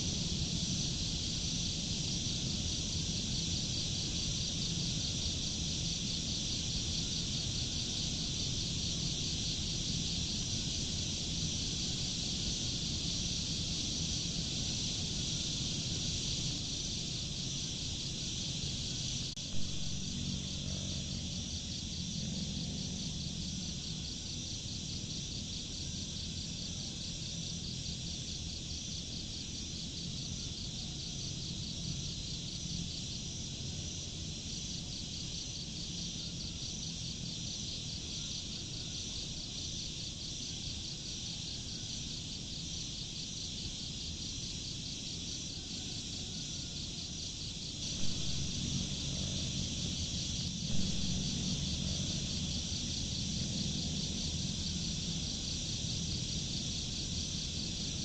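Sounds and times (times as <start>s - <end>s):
insects trilling: 0.0s - 58.0s
low rumble: 47.9s - 54.3s.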